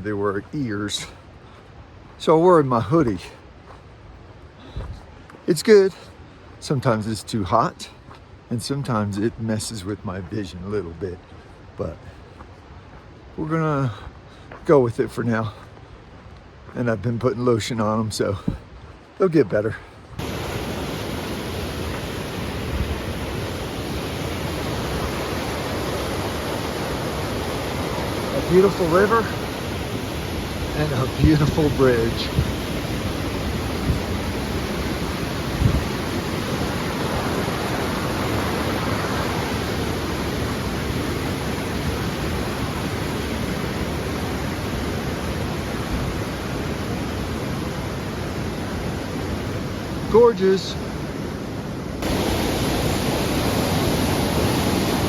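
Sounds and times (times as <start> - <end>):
river rushing: 19.0 - 55.0.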